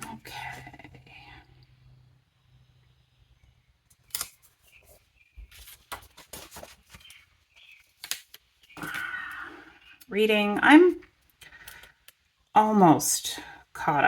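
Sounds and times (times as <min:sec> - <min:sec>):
paper crinkling: 0:04.0 - 0:08.8.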